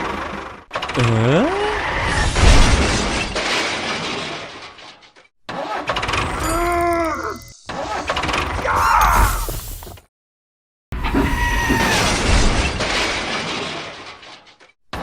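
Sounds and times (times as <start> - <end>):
pitched sound rising and falling: 6.1 - 8.5.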